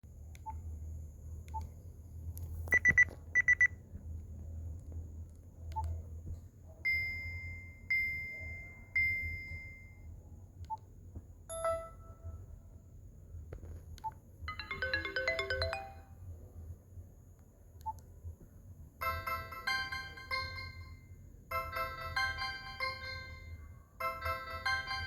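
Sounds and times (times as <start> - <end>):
electronic ringtone beeps: 14.5 - 16.1.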